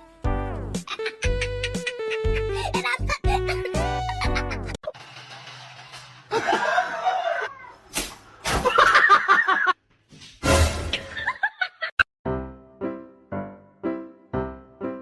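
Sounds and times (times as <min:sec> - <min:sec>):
people laughing: 0:06.3 - 0:07.5.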